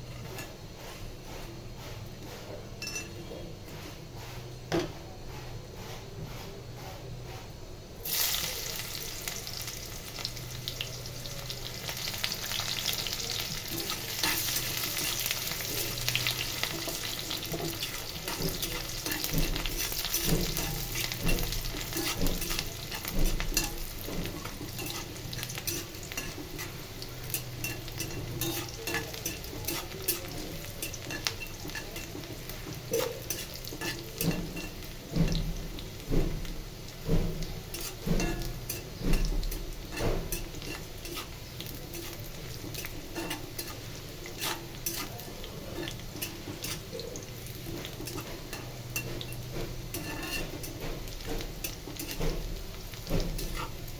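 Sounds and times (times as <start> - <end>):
food sizzling in frying pan: 8.0 - 53.9
spatula scraping pan: 11.8 - 36.5, 37.1 - 53.9.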